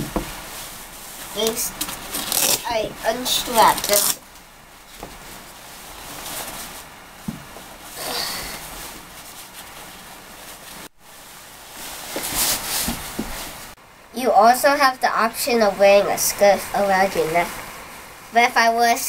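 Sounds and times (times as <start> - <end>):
soft knocks: 0.0 - 0.4
winter clothing rustling: 0.0 - 13.8.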